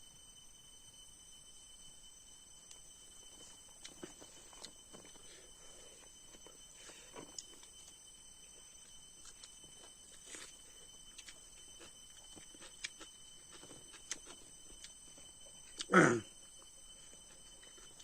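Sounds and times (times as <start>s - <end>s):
chewing clicks and smacks: 9.2s - 15.0s, 15.6s - 15.9s.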